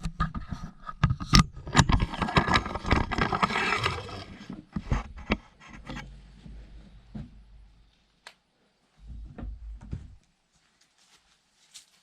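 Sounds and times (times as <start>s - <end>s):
metal ramp scraping: 1.8s - 4.6s.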